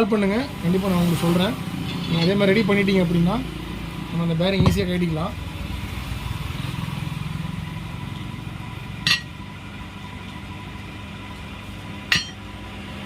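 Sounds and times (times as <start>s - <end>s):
metal tool parts clinking: 1.8s - 2.4s.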